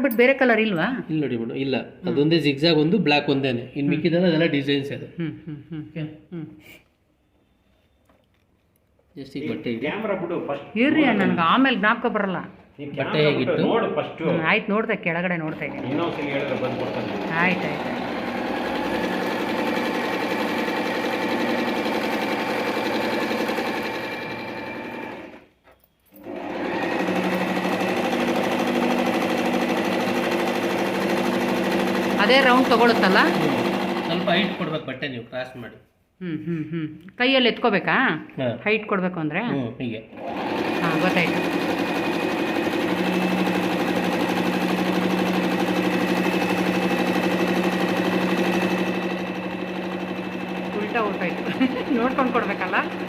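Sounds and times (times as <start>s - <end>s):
sewing machine stitching: 15.5s - 34.9s, 40.1s - 53.0s.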